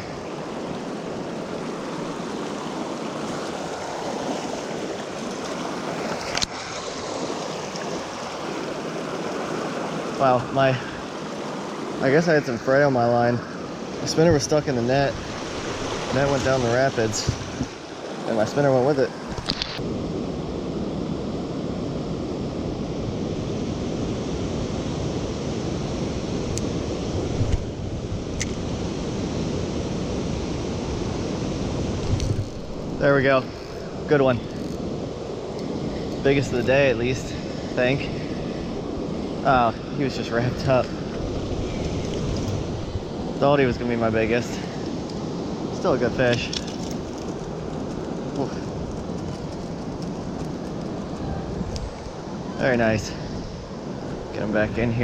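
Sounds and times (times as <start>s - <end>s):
river rapids rushing: 0.0s - 19.3s.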